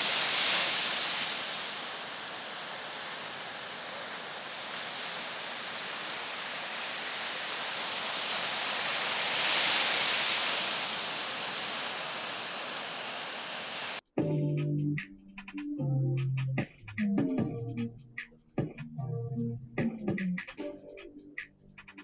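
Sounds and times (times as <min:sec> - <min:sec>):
ocean waves breaking: 0:00.0 - 0:14.0.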